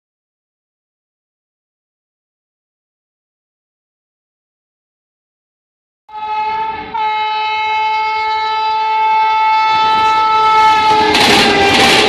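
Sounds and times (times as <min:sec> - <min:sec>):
locomotive horn blasts: 0:06.1 - 0:12.0
rushing noise of passing train: 0:06.1 - 0:12.0
train wheel clatter: 0:09.8 - 0:12.0.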